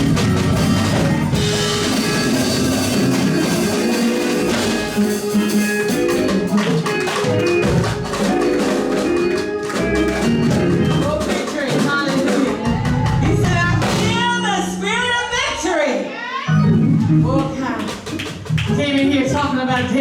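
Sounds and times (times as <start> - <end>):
church band playing gospel music: 0.0 - 15.8.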